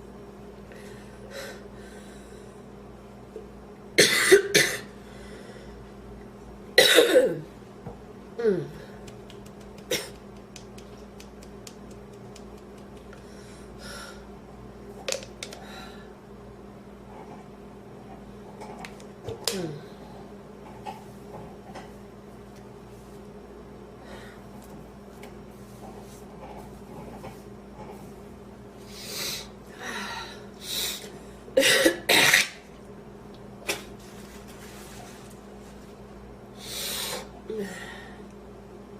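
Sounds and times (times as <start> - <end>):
steady low hum: 0.0 - 38.9
woman breathing: 0.7 - 2.6, 13.2 - 14.3, 15.6 - 16.2, 24.0 - 24.5, 28.9 - 31.4, 36.6 - 38.3
woman coughing: 4.0 - 4.9, 6.8 - 7.5, 31.6 - 32.6.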